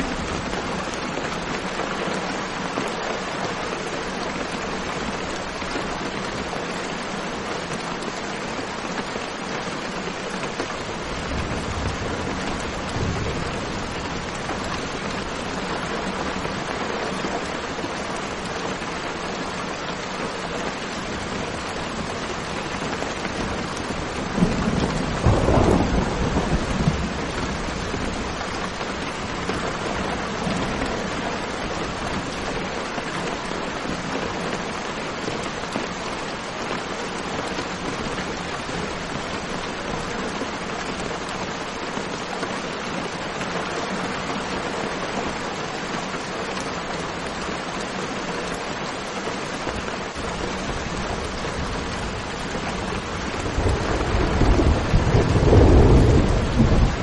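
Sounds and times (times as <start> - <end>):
steady rain: 0.0 - 57.0
low rumble of thunder: 11.1 - 16.4, 23.9 - 30.8, 50.9 - 57.0.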